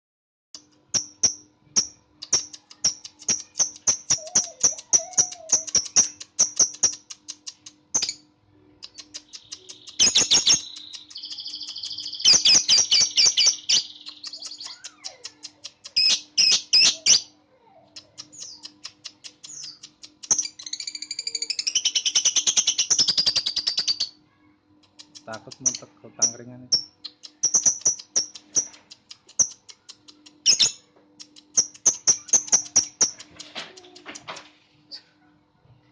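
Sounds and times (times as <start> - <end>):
lovebird chirping: 1.0 - 8.2, 8.8 - 17.3, 17.9 - 24.2, 24.8 - 33.9
buzzy bird trilling: 2.4 - 7.1.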